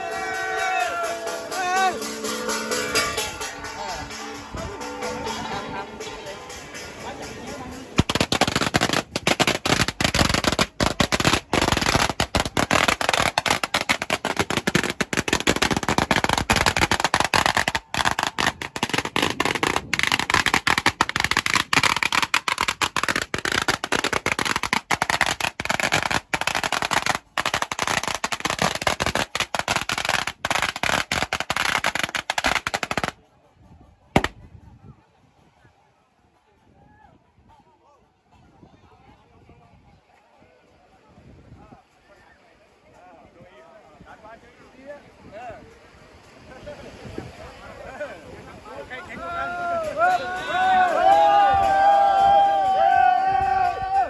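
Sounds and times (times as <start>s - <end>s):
firecrackers crackling: 6.5s - 33.2s, 34.2s - 34.4s.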